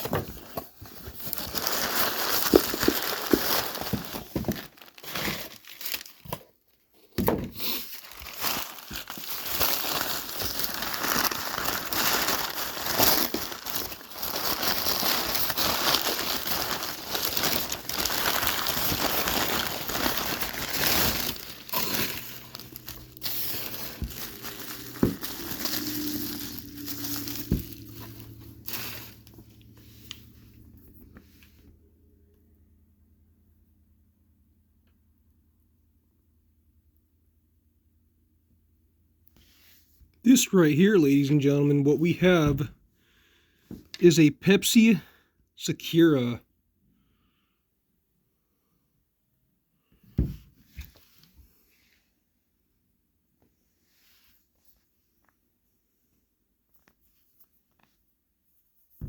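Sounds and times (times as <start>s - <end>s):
wrapping material crinkling: 0.0s - 6.5s, 7.6s - 30.2s.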